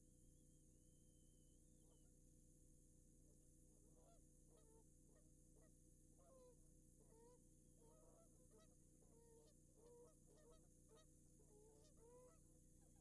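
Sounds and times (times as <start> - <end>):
geese honking: 9.4 - 12.4.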